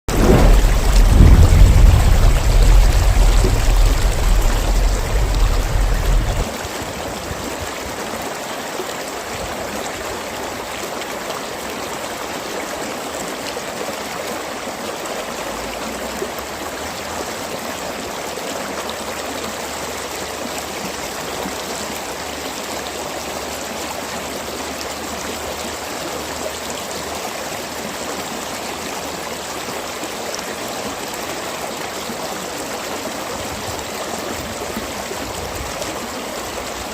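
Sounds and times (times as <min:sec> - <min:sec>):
loud deep rumble: 0:00.1 - 0:06.5
mountain stream gurgling: 0:00.1 - 0:36.9.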